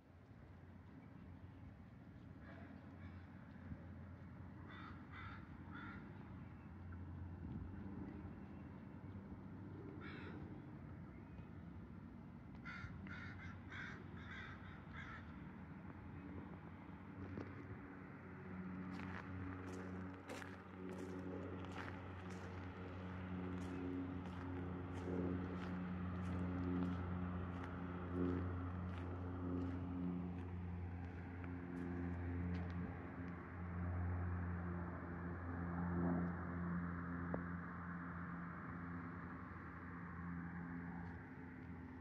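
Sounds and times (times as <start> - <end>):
vehicle engine running: 18.9 - 32.8.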